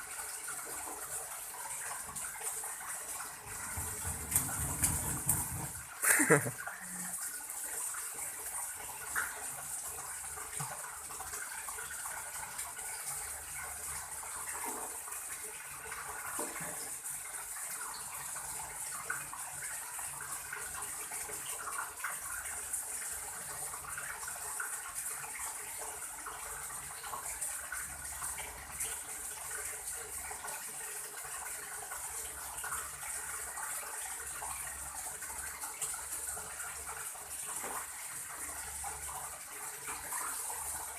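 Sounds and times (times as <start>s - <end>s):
water running: 0.0s - 40.9s
splashes and knocks: 3.4s - 5.9s.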